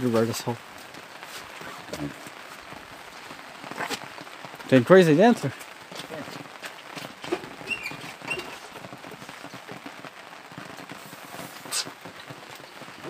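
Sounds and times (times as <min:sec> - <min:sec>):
rain pattering: 0:00.0 - 0:13.0
short high squeaks: 0:07.6 - 0:08.6.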